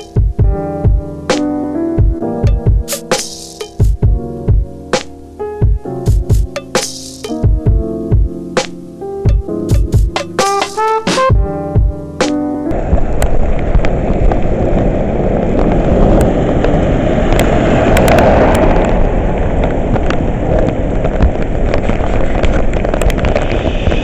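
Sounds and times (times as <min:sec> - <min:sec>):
heavy rain pouring: 0:12.7 - 0:24.0
wind rumbling on microphone: 0:12.7 - 0:24.0
raindrops clicking close by: 0:13.0 - 0:23.6.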